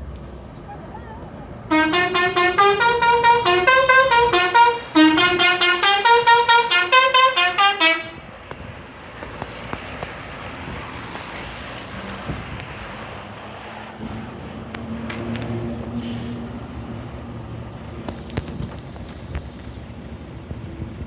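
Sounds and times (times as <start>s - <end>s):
musical vehicle horn playing tune: 1.7s - 8.3s.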